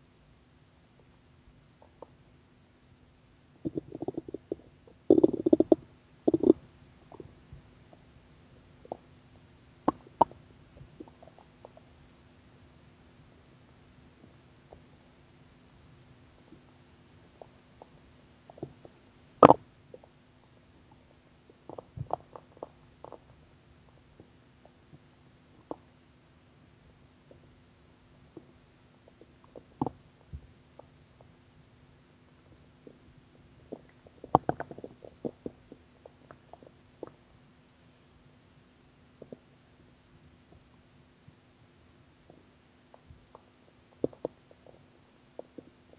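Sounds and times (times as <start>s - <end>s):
stomach gurgling and growling: 1.7s - 2.2s, 3.6s - 9.2s, 9.8s - 12.0s, 16.3s - 26.0s, 28.2s - 31.5s, 32.2s - 37.3s, 39.2s - 39.5s, 42.2s - 45.9s.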